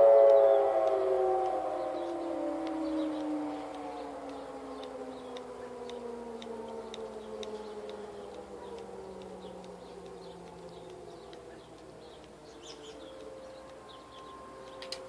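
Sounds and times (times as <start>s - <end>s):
distant warning sirens: 0.0s - 15.0s
high bird-like chirps: 0.1s - 6.0s, 6.9s - 15.0s.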